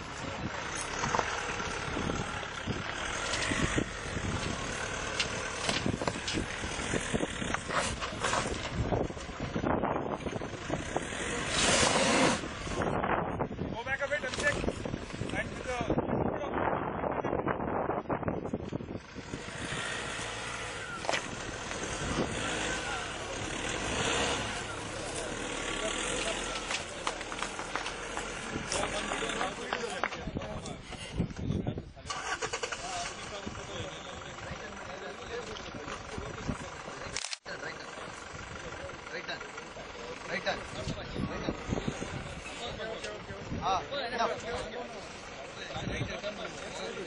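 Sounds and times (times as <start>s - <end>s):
car engine running: 0.0s - 16.2s, 17.3s - 31.4s, 32.1s - 47.0s.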